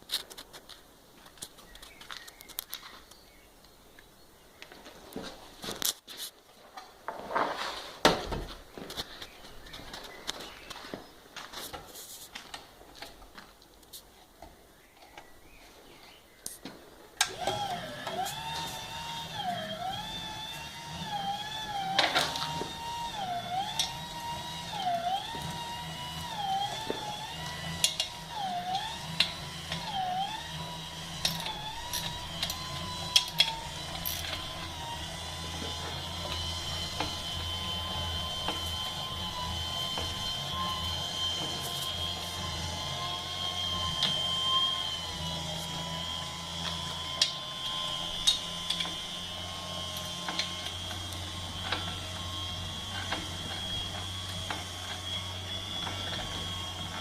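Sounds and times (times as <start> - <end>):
wiper motor whine: 17.2 - 57.0.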